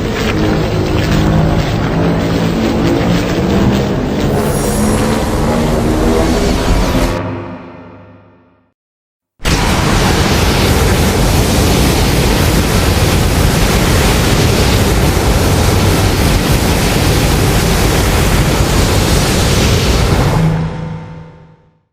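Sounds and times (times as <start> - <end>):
loud rushing hiss and rumble: 9.4 - 20.4.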